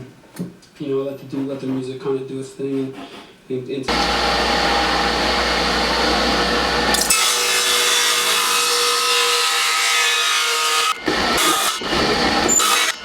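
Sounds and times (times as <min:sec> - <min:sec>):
power saw cutting wood: 0:03.9 - 0:13.0.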